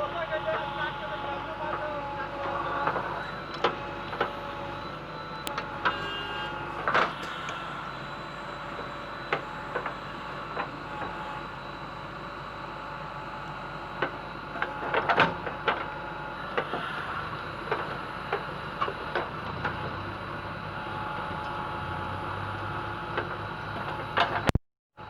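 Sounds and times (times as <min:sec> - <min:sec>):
diesel engine running: 0:00.0 - 0:24.5.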